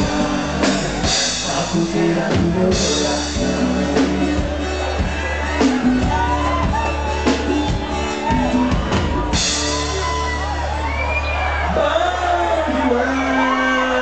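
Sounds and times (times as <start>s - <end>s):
live band playing: 0.0s - 14.0s
audience shouting and whooping: 3.7s - 14.0s.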